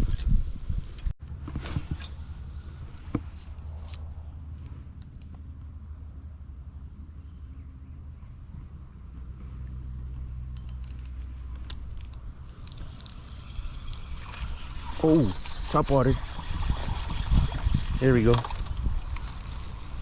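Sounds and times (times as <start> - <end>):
wind rumble on microphone: 0.0 - 5.0, 11.6 - 20.0
small ticks: 2.3 - 20.0.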